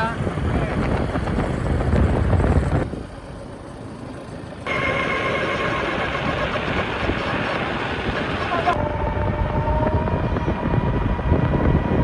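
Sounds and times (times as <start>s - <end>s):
wind rumbling on microphone: 0.0s - 3.4s, 4.7s - 12.0s
motorbike engine: 4.6s - 12.0s.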